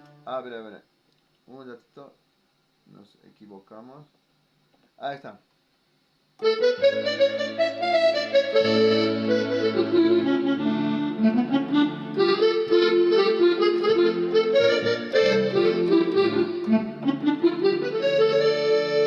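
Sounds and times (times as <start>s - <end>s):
keyboard accordion melody: 0.0s - 0.2s, 6.4s - 19.0s.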